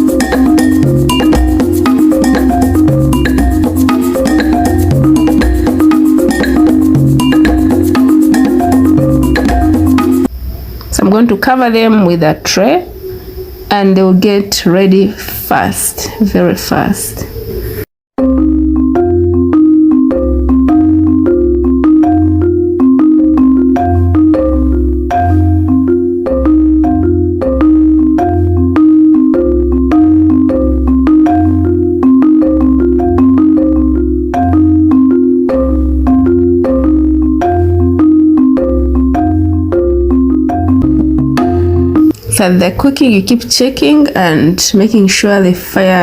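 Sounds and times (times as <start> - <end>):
melody of short struck notes: 0.0 - 10.3, 18.2 - 43.0
pulsing bass line: 0.0 - 10.3, 18.2 - 44.0.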